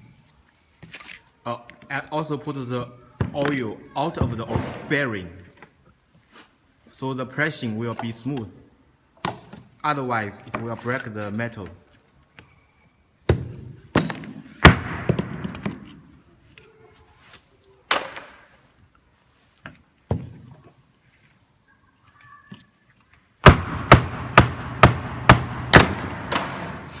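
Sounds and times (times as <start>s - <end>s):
metal rings knocked together: 25.7s - 27.0s.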